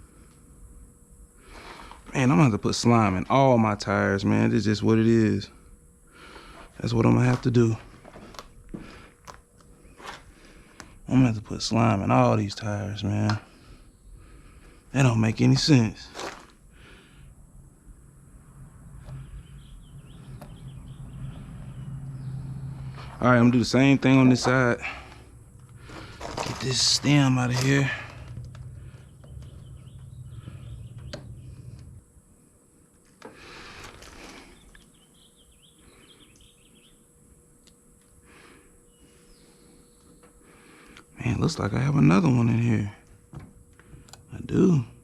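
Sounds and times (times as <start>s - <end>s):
low steady hum: 0.0s - 45.0s
birds chirping: 2.2s - 32.6s, 33.3s - 45.0s
faint bird chirps: 19.0s - 23.7s, 27.1s - 32.0s, 34.5s - 37.2s, 38.8s - 40.5s.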